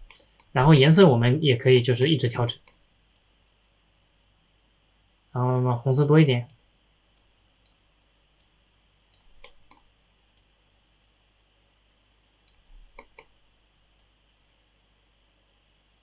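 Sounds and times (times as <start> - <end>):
faint computer mouse clicks: 8.4 - 9.8, 12.5 - 13.3.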